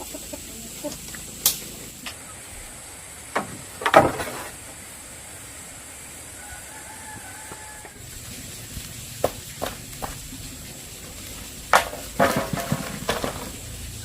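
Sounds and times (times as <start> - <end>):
steady low hiss: 0.0 - 14.0
sharp knocks and clatters: 3.3 - 4.5, 11.7 - 13.8.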